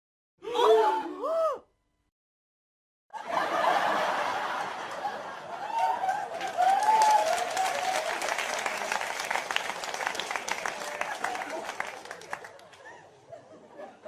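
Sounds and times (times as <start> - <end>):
studio audience laughing: 3.1 - 6.6, 11.1 - 14.0.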